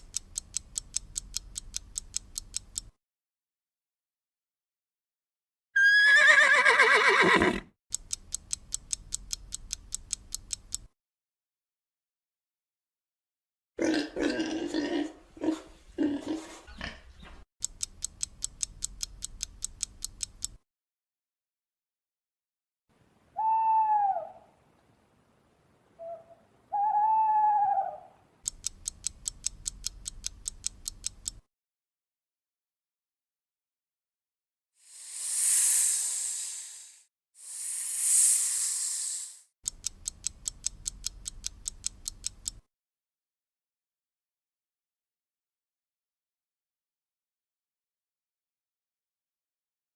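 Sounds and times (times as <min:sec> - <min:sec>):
clock ticking: 0:00.0 - 0:02.9, 0:07.9 - 0:10.9, 0:17.6 - 0:20.6, 0:28.5 - 0:31.4, 0:39.7 - 0:42.6
horse whinnying: 0:05.8 - 0:07.6
owl hooting: 0:23.4 - 0:24.5, 0:26.0 - 0:28.2.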